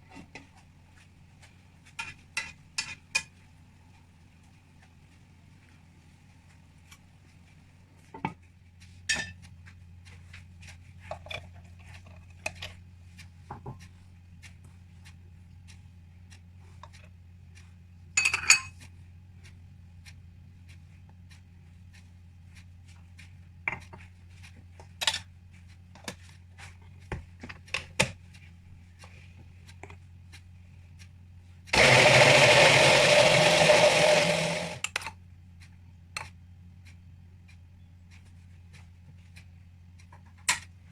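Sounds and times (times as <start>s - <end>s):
kitchen utensils clinking: 18.2s - 18.7s
loud whirring machine: 31.7s - 34.8s.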